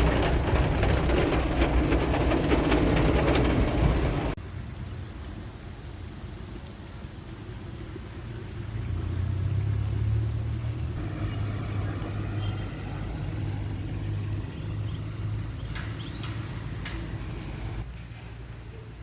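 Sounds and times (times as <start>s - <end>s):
low steady rumble: 0.0s - 5.5s.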